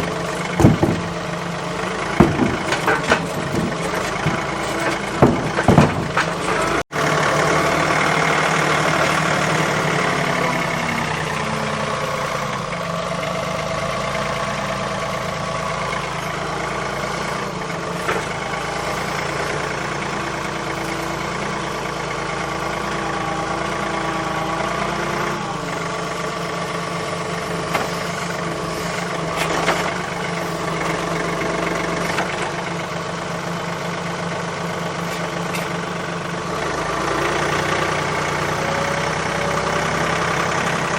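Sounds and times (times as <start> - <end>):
engine running steadily: 0.0 - 40.9
short knocks: 0.3 - 6.8.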